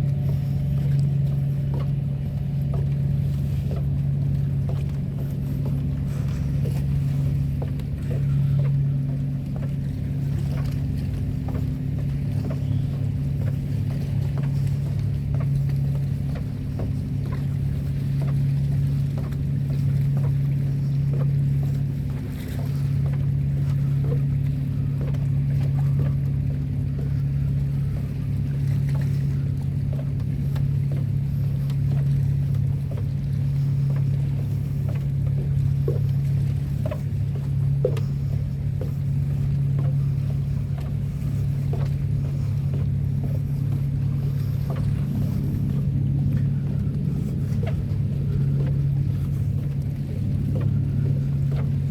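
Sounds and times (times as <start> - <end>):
engine low drone: 0.0 - 51.9.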